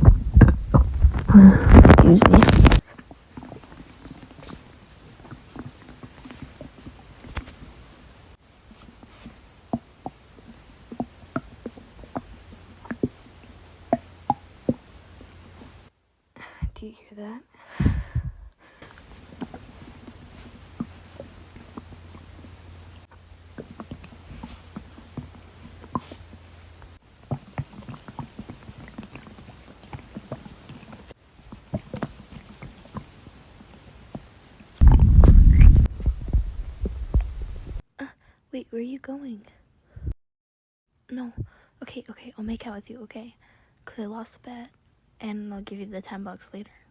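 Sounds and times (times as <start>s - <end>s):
loud low thumping: 0.0s - 2.8s, 34.8s - 37.8s
stomach gurgling: 0.0s - 7.1s, 27.3s - 37.8s.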